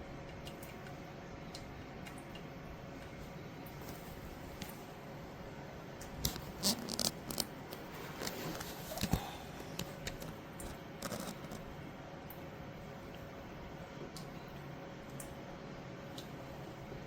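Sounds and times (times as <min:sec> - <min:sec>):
faint steady hum: 0:00.0 - 0:17.0
handling clicks taps and rustles: 0:06.1 - 0:11.6.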